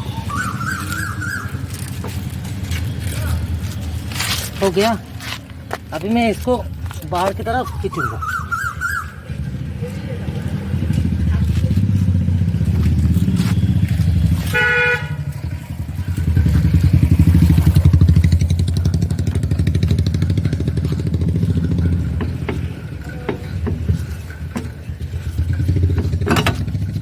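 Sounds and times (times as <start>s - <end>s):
vehicle engine droning: 5.8s - 27.0s
vehicle horn honk: 13.4s - 15.5s.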